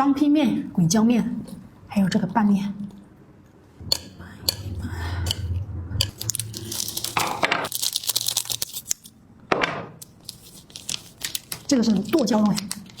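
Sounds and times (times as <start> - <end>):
plastic packets crinkling: 6.1 - 9.2, 10.0 - 13.0.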